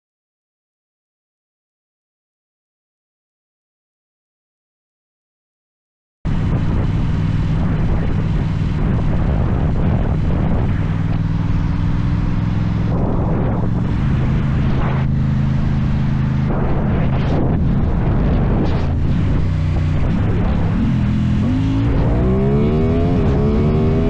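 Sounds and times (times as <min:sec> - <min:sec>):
motorcycle engine running: 0:06.3 - 0:24.0.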